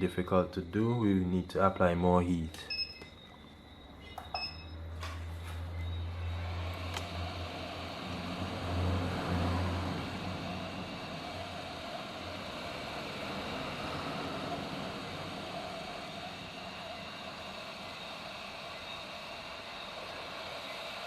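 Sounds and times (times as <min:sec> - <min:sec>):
low hum: 0:00.0 - 0:21.0
heat gun blowing air: 0:06.3 - 0:21.0.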